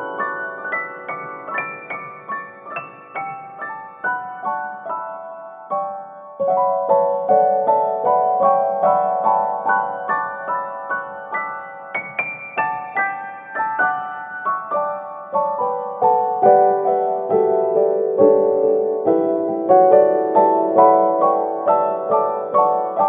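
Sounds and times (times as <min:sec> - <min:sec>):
piano music: 0:00.0 - 0:23.0.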